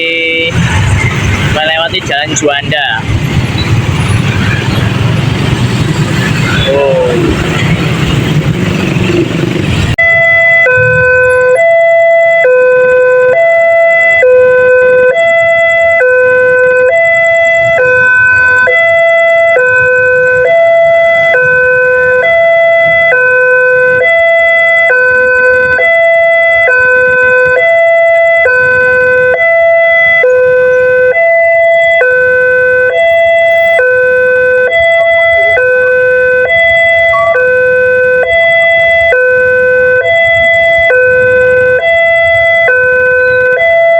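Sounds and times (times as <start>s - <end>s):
two-tone level-crossing siren: 0.0s - 43.9s.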